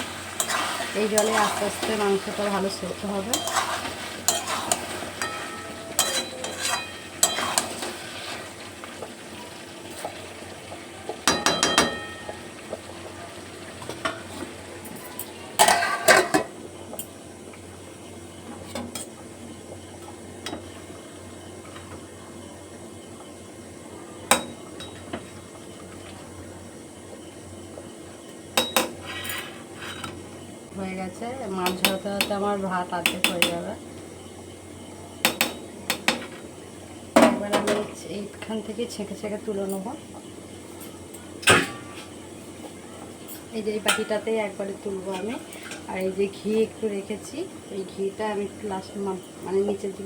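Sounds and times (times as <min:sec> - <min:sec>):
chicken sizzling: 0:00.0 - 0:50.0
metal utensil scraping a pot: 0:00.4 - 0:02.6, 0:03.2 - 0:08.5, 0:15.6 - 0:16.5, 0:29.0 - 0:30.2.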